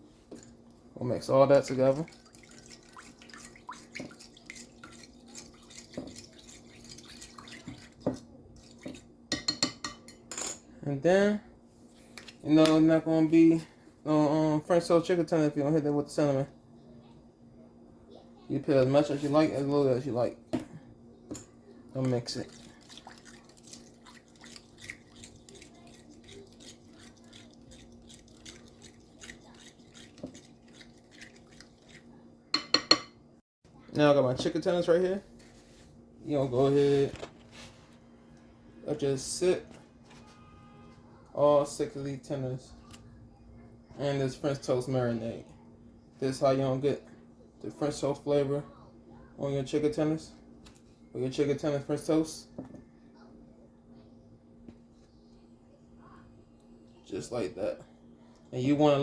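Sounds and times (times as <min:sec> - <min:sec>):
liquid stirred in a bowl: 0:00.1 - 0:10.3, 0:20.4 - 0:33.2
utensil tapping a bowl: 0:32.6 - 0:33.1.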